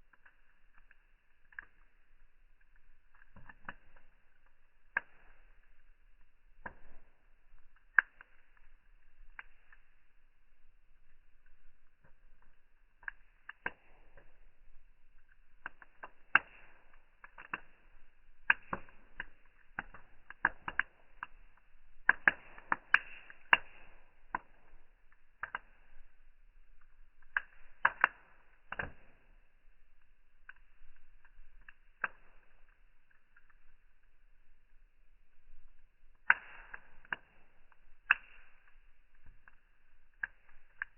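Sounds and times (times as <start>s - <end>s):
wood fire crackling: 0.0s - 40.9s.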